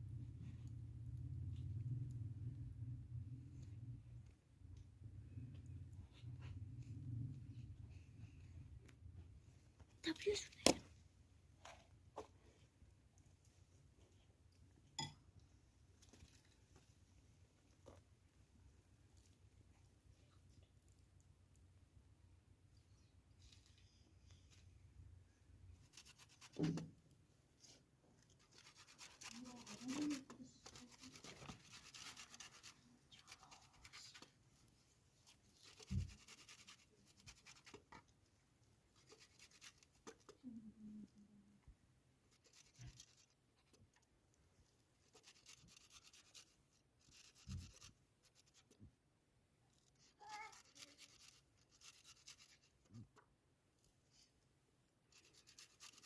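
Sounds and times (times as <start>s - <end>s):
scraping and rubbing: 25.7s - 27.0s, 27.6s - 38.1s, 38.9s - 40.5s, 42.3s - 43.9s, 45.0s - 48.8s, 49.8s - 53.1s, 55.1s - 56.0s.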